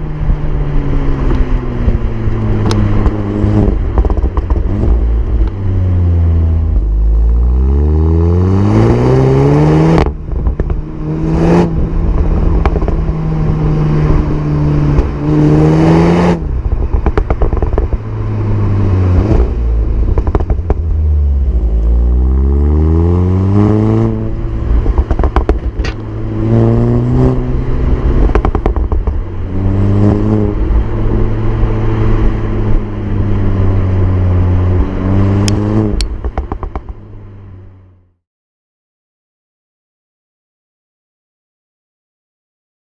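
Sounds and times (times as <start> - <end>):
exhaust crack: 0.0 - 7.7, 9.8 - 37.3
car engine revving: 0.0 - 38.1.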